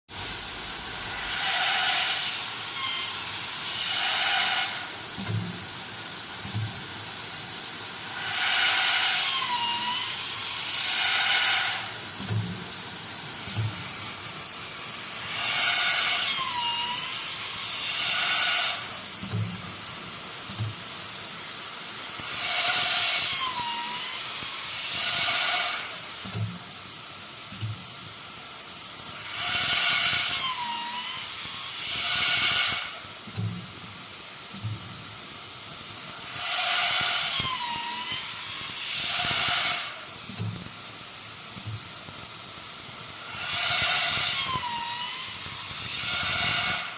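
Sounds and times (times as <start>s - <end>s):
high grinding whine: 0.1s - 5.2s, 7.2s - 19.1s, 21.3s - 26.2s, 29.0s - 33.4s, 43.0s - 46.9s
steady machine hiss: 0.1s - 46.9s.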